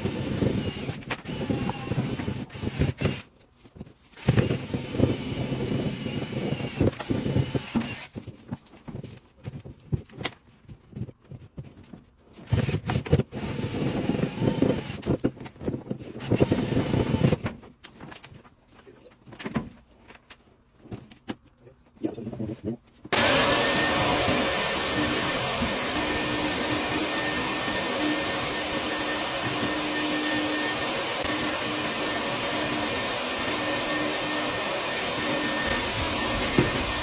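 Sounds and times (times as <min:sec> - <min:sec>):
vacuum motor whining: 0:00.0 - 0:03.2, 0:13.4 - 0:15.0, 0:23.1 - 0:37.0
rustling and scraping handling: 0:03.2 - 0:04.2, 0:07.9 - 0:13.3, 0:17.5 - 0:23.2.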